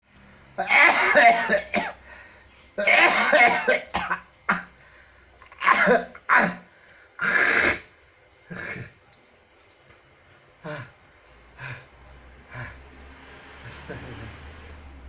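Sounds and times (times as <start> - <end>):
person coughing harshly: 0.6 - 2.0, 2.8 - 4.8, 5.4 - 7.9, 8.5 - 9.0.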